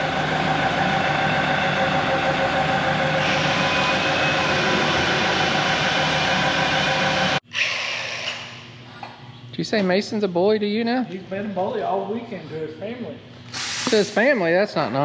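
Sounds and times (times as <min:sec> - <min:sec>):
heavy machinery drone: 0:00.0 - 0:07.4
steady machine whine: 0:00.0 - 0:07.4.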